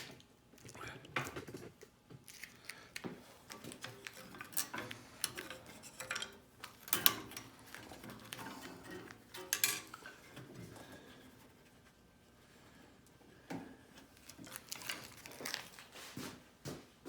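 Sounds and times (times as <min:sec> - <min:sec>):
clicks and knocks of metal plate: 0:03.6 - 0:10.5.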